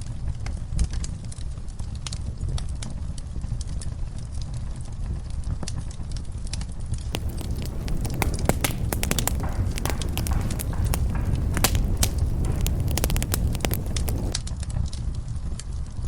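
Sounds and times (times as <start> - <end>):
wood fire crackling: 7.1 - 14.4.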